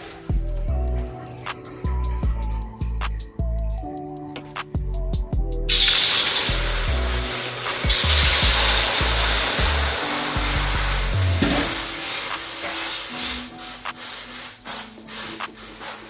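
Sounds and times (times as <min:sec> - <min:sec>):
background music with bass line: 0:00.0 - 0:16.0
wok sizzling: 0:05.7 - 0:16.0.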